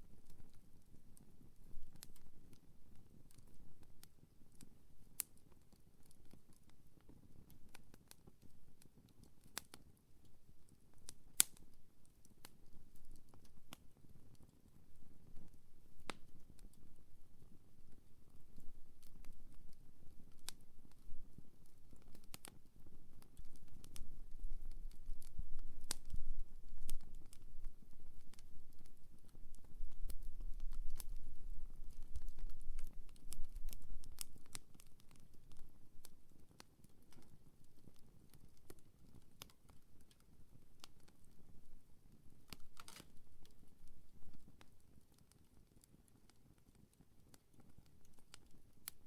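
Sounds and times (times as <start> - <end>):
campfire crackling and popping: 0.1 - 49.0
low rumble of flames: 12.4 - 44.7.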